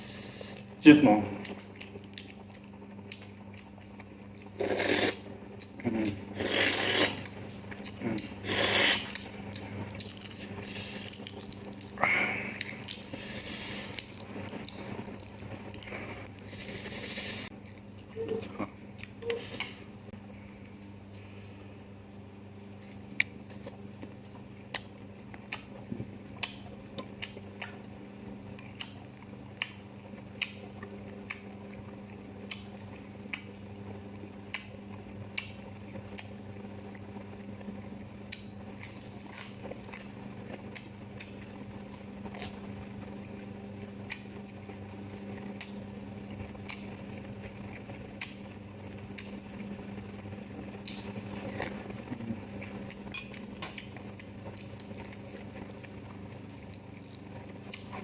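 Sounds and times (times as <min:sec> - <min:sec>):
biting and chewing crunches: 0:01.4 - 0:17.9, 0:50.7 - 0:58.0.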